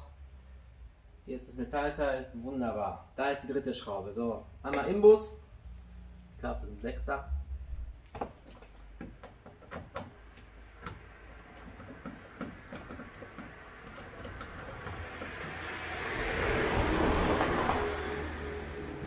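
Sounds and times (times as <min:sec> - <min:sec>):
vehicle rushing past: 0:13.6 - 0:19.0.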